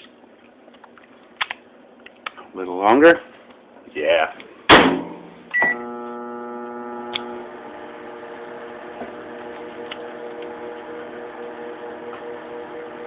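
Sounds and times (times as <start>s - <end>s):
microwave oven humming: 5.5s - 13.0s.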